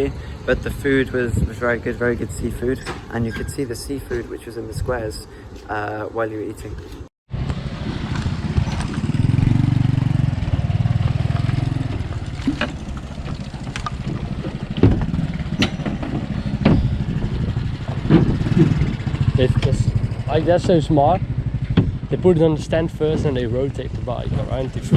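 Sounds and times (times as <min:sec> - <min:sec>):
sharp clicks and knocks: 0:11.4 - 0:17.1, 0:17.9 - 0:20.9, 0:21.6 - 0:22.0.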